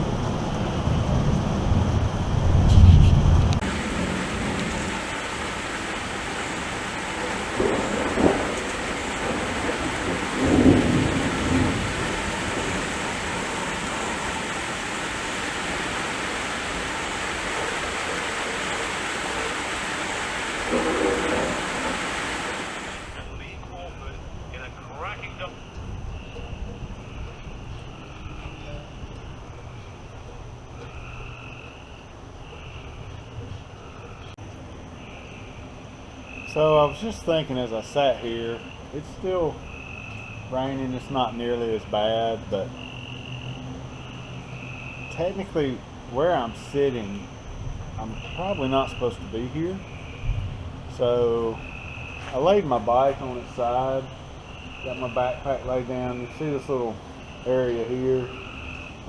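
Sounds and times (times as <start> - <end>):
thunder rumbling: 1.0 - 23.3
heavy rain falling: 3.6 - 23.3
frogs trilling: 48.0 - 50.3, 57.2 - 59.0.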